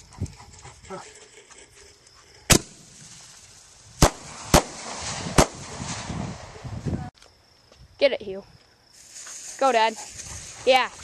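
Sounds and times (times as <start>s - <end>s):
fireworks bangs: 2.5s - 7.1s
fireworks hiss: 2.5s - 7.1s, 8.9s - 11.0s.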